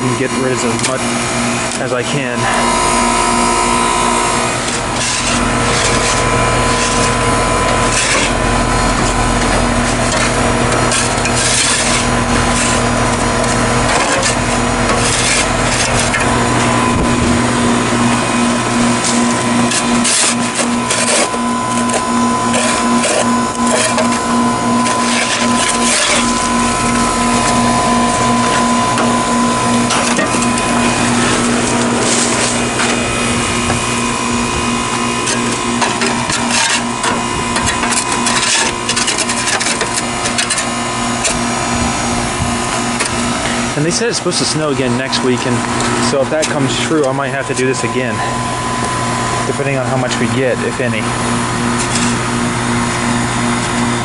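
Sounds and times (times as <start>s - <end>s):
heat pump humming: 0.0s - 54.0s
scraping snow and ice: 4.6s - 8.4s, 9.8s - 13.2s, 13.9s - 16.9s, 29.6s - 33.0s.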